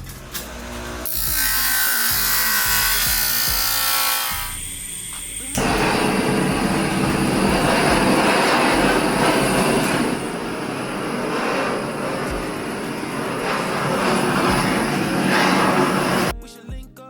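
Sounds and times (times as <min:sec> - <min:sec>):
music: 0:00.0 - 0:09.2, 0:12.3 - 0:12.6, 0:13.7 - 0:17.0
power tool running: 0:00.0 - 0:16.3.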